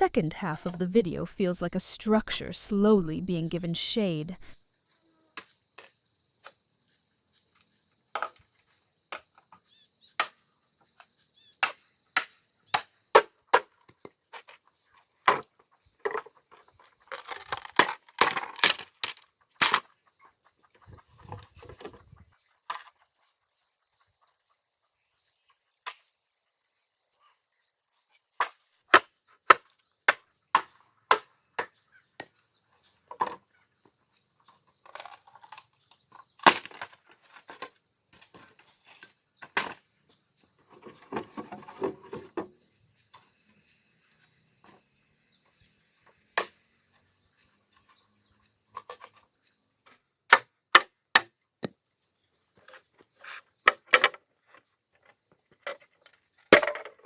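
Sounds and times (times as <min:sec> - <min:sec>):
wood crackling and splintering: 0:17.0 - 0:19.8.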